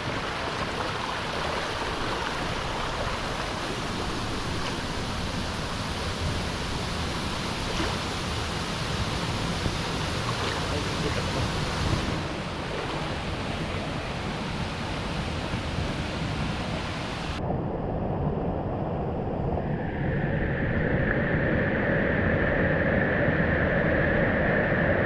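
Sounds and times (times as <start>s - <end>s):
waterfall rushing: 0.0s - 17.4s.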